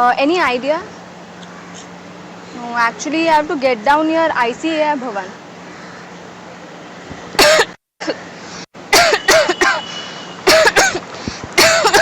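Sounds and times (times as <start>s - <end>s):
person coughing: 7.4s - 8.2s, 8.9s - 9.8s, 10.5s - 11.0s, 11.6s - 12.0s.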